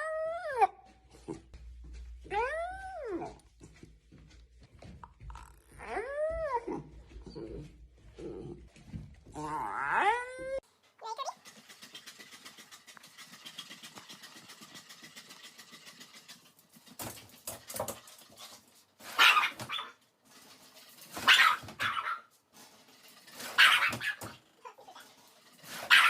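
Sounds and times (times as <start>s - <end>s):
dog barking: 19.2s - 20.0s, 21.2s - 22.3s, 23.5s - 24.4s, 25.8s - 26.0s.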